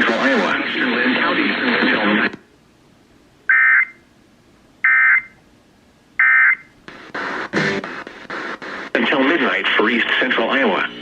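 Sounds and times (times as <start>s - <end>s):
crackly radio noise: 0.0s - 2.5s, 6.2s - 11.0s
data tone bursts: 6.2s - 6.7s.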